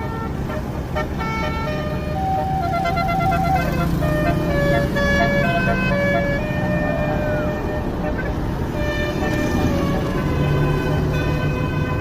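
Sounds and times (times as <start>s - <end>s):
bus horn playing a tune: 0.0s - 12.0s
vehicle engine rumbling: 0.0s - 12.0s.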